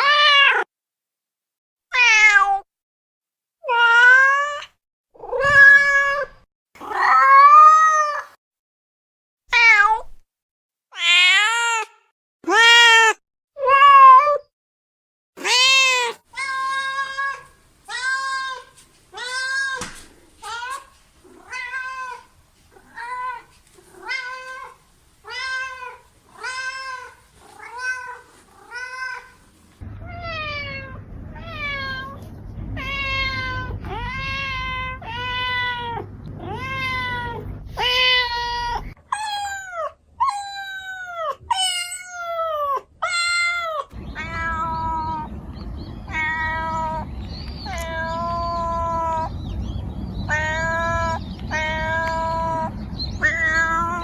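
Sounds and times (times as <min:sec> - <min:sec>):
cat meowing: 0:01.9 - 0:02.6, 0:03.6 - 0:08.3, 0:09.5 - 0:10.1, 0:10.9 - 0:14.5, 0:15.4 - 0:29.4, 0:30.0 - 0:32.2, 0:32.8 - 0:49.5, 0:50.3 - 0:54.0
low background rumble: 0:16.3 - 0:39.0, 0:43.9 - 0:54.0.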